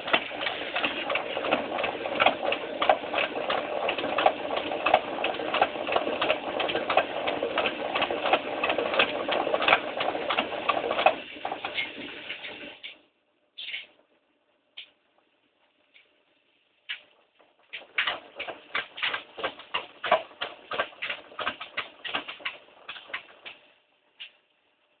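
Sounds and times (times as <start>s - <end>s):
washing machine rattling: 0.0s - 12.8s, 17.6s - 23.7s.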